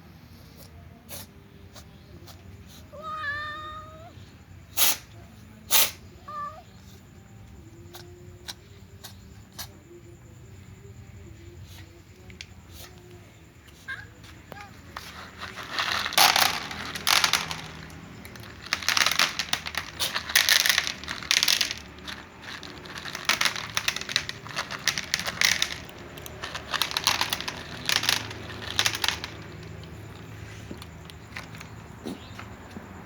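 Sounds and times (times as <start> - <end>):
dry cat food crunching: 14.8 - 31.9.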